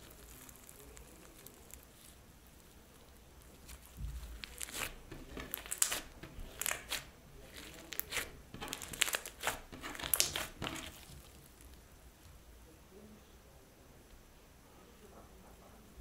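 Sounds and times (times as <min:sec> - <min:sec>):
crackling crinkling pops: 0:00.0 - 0:11.9
slime squeezed by hand: 0:03.6 - 0:11.7.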